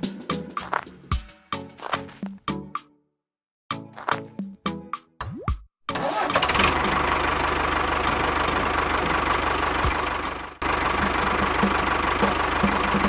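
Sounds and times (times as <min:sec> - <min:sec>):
small engine chugging: 0:06.0 - 0:13.0.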